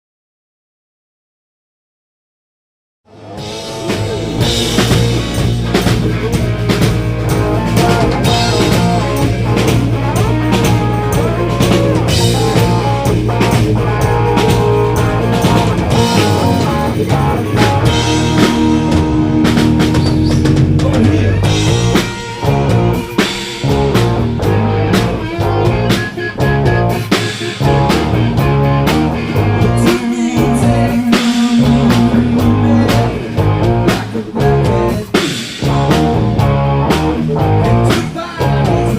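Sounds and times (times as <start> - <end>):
rock band playing: 3.1 - 38.9.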